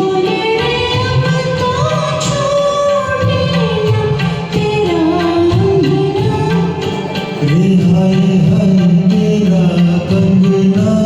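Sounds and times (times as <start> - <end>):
karaoke backing track: 0.0 - 11.0
person singing: 0.0 - 11.0.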